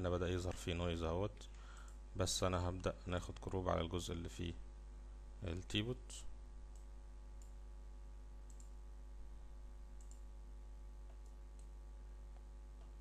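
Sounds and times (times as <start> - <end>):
low electrical hum: 0.0 - 13.0
computer mouse clicks: 6.7 - 7.6, 8.5 - 8.8, 10.0 - 10.3.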